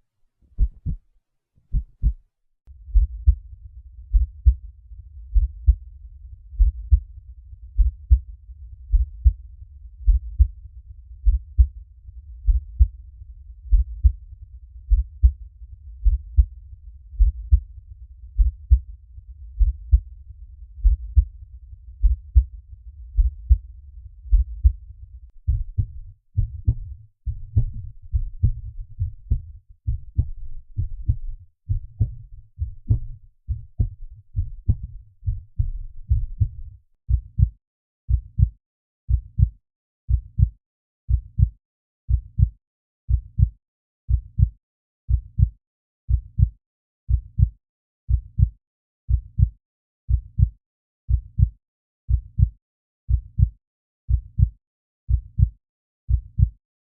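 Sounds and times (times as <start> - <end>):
heartbeat thumping: 0.6 - 1.0, 1.7 - 2.2, 2.9 - 3.4, 5.4 - 5.8, 6.6 - 7.0, 7.8 - 8.2, 8.9 - 9.4, 10.0 - 10.5, 11.2 - 11.7, 12.5 - 12.9, 13.7 - 14.2, 14.9 - 15.4, 16.0 - 16.5, 17.2 - 17.6, 18.4 - 18.8, 19.6 - 20.0, 20.8 - 21.3, 22.0 - 22.5, 23.2 - 23.6, 24.3 - 36.8
low rumble: 2.7 - 36.8.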